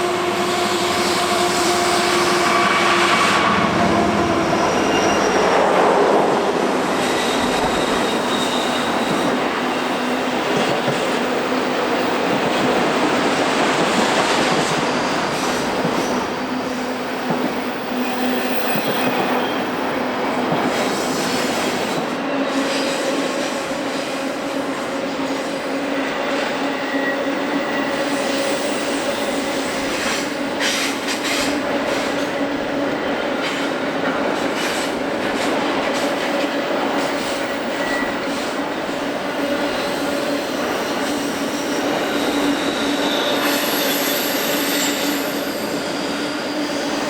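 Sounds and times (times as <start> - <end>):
train wheels rolling on rail: 0.0 - 47.0.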